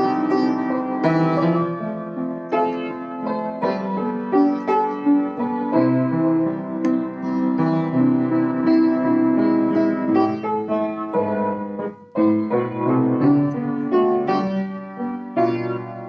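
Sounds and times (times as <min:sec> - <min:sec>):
solo piano playing hymn chords: 0:00.0 - 0:16.0.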